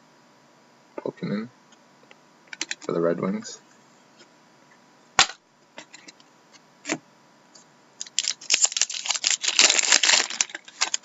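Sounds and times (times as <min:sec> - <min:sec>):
packaging rustling and crinkling: 0:08.0 - 0:11.0.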